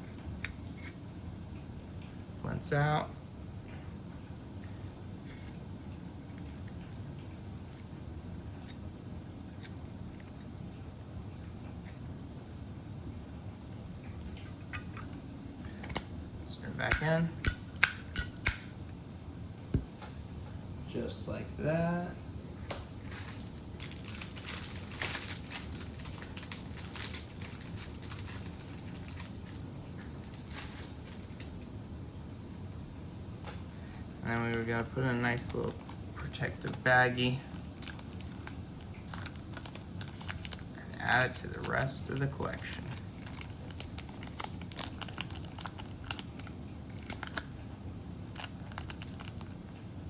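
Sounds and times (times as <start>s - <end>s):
lighter handling clicks: 16.9s - 18.7s
plastic bag crinkling: 23.0s - 31.6s, 33.7s - 50.0s.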